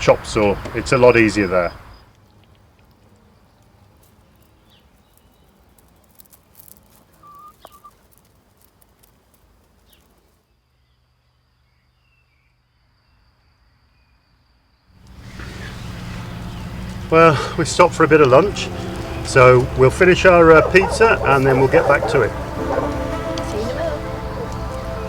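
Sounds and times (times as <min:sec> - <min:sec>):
bird chirps: 0:00.4 - 0:02.1, 0:15.2 - 0:25.0.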